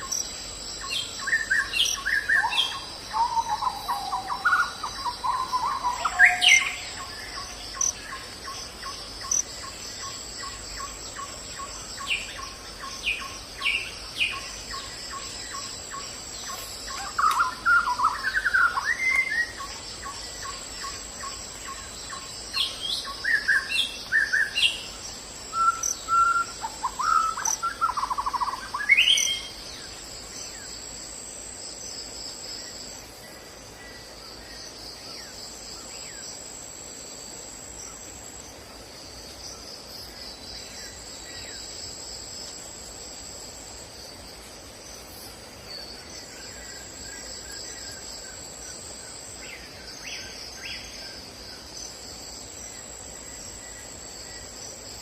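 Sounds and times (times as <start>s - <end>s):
birds chirping and trilling: 0.0s - 30.8s.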